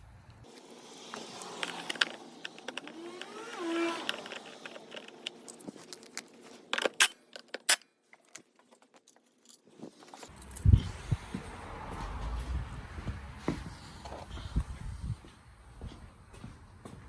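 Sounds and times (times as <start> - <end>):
plastic panels rustling and clicking: 1.1 - 10.3
plastic rubbing squeak: 1.7 - 5.2.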